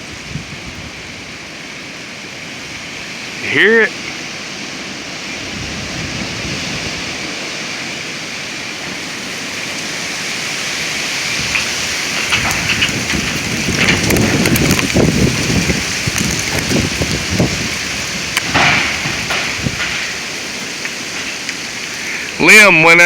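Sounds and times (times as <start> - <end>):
strong gusting wind: 0.0 - 23.0
crackling and rattling: 8.8 - 22.6.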